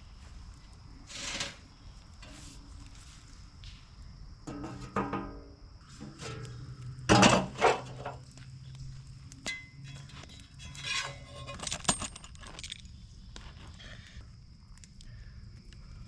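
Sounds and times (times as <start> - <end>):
cast iron cookware clanking: 4.5 - 8.2, 9.4 - 11.6.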